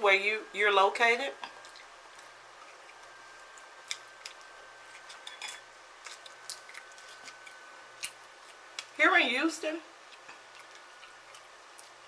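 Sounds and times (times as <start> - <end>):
person chewing: 10.0 - 12.0.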